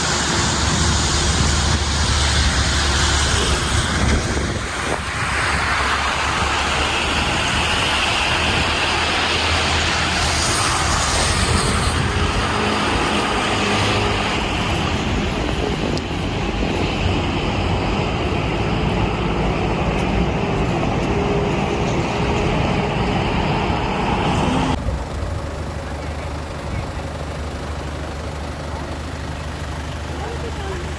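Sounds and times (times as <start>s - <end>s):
passing vehicles: 0.0s - 30.9s.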